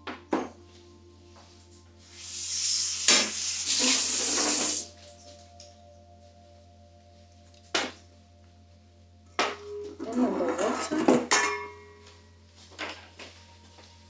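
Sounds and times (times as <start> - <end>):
kitchen tap running: 2.2 - 4.9.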